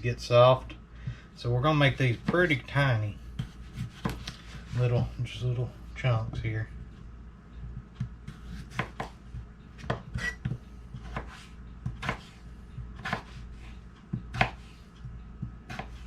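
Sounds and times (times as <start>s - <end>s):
knife chopping potatoes: 3.4s - 5.1s, 7.8s - 16.0s.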